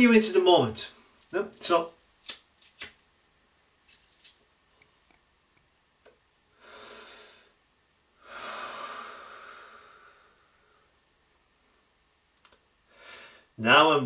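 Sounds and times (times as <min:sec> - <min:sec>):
person exhaling: 0:06.5 - 0:07.6, 0:08.2 - 0:11.0, 0:12.9 - 0:13.5
breath drawn in: 0:06.6 - 0:07.6, 0:08.2 - 0:10.9
faint clicks: 0:12.0 - 0:12.6.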